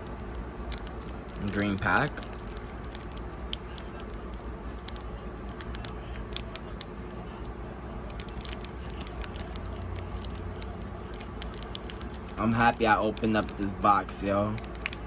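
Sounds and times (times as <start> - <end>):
card pack crinkling: 0.0 - 15.0
steady low hum: 0.0 - 15.0.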